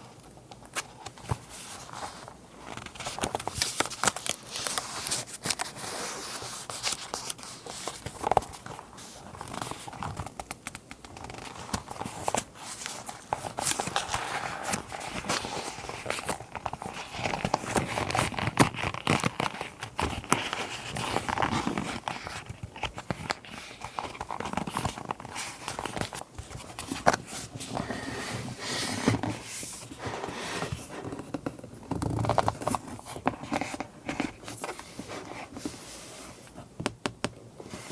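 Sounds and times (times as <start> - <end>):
paper rustling and crinkling: 0.7 - 36.6
small taps and clicks: 10.2 - 11.4.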